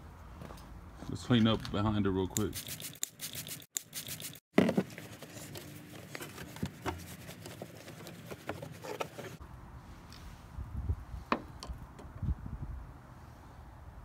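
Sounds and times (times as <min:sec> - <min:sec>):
rag rubbing and rustling: 0:02.6 - 0:09.4.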